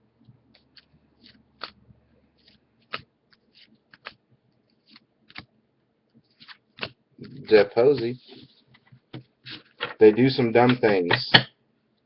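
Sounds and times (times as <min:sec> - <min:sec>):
trading cards clicking and snapping: 0:00.5 - 0:04.2, 0:04.9 - 0:05.5, 0:06.4 - 0:08.1.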